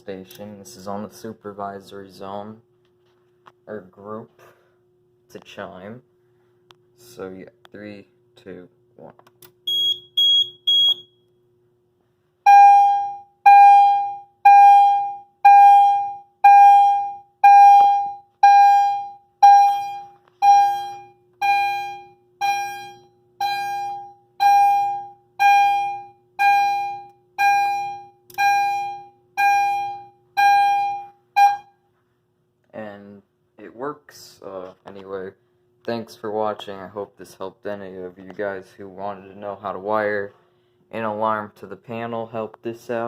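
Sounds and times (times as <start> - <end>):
short high beeps: 9.7 - 11.1
fire alarm chime: 9.7 - 11.2, 12.5 - 31.8.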